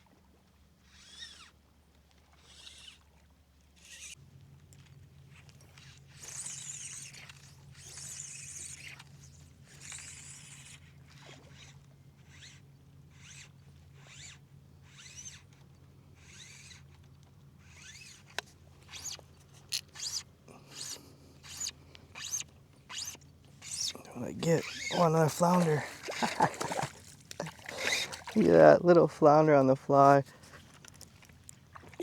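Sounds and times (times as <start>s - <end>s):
fishing line zipping through guides: 0.8s - 1.6s, 2.2s - 4.2s, 5.3s - 17.0s, 17.6s - 28.8s.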